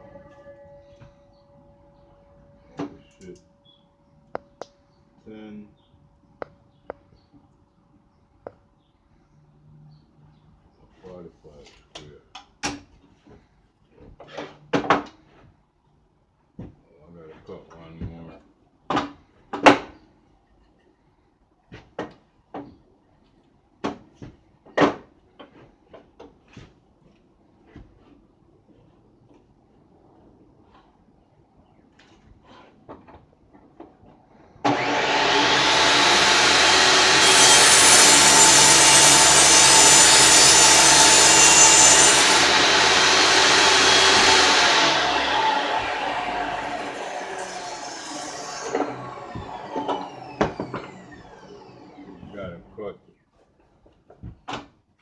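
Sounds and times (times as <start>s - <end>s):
power saw cutting wood: 34.6s - 52.6s
wood and tools knocking: 34.7s - 51.3s.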